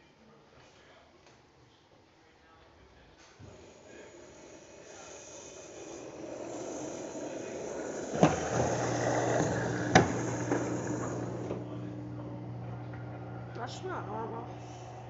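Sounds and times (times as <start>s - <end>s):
steady low hum: 3.4s - 15.0s
water rushing in washing machine: 3.5s - 11.8s.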